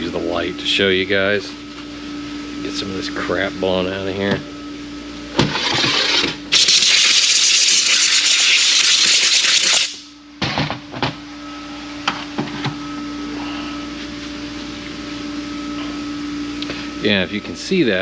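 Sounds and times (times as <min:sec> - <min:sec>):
air blow gun hissing: 0:06.5 - 0:10.1.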